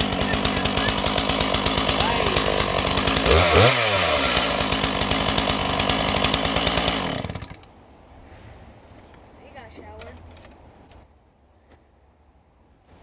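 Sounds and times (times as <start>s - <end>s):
chainsaw cutting wood: 0.0s - 7.7s.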